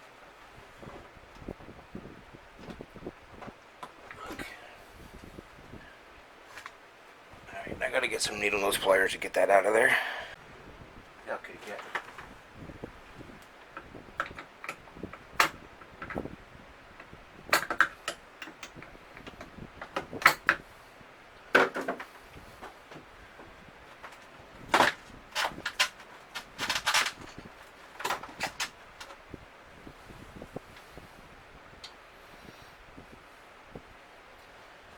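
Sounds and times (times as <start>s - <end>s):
tools knocking on plastic parts: 17.0s - 20.6s.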